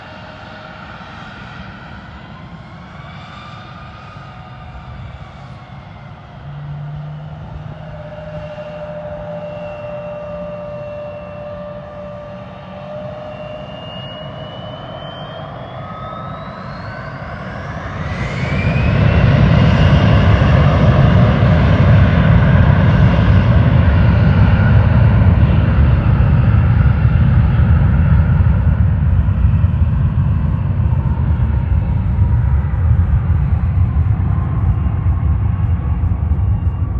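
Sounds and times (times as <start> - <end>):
jet engines spooling up: 0.0 - 36.9.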